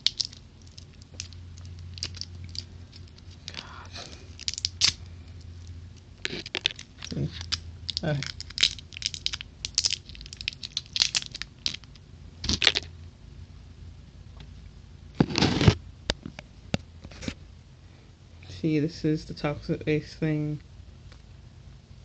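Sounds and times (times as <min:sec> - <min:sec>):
tearing crinkle: 0:00.0 - 0:05.5, 0:06.2 - 0:12.9
plastic packaging crinkling: 0:00.0 - 0:12.9.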